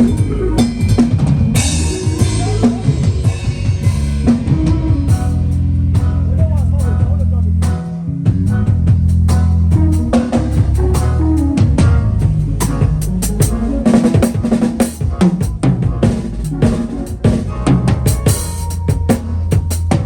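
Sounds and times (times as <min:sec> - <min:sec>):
drum kit playing fills: 0:00.0 - 0:20.0
sustained bass line: 0:00.0 - 0:20.0.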